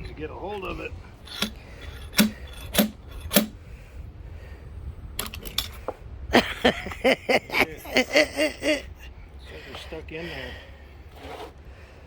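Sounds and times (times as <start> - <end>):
nail puller clicking on nails: 1.3 - 3.6, 5.2 - 5.8.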